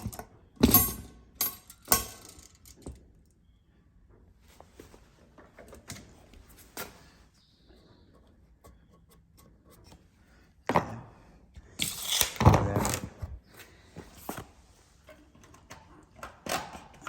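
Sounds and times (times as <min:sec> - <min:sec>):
tools clicking and clattering: 0:00.0 - 0:03.4.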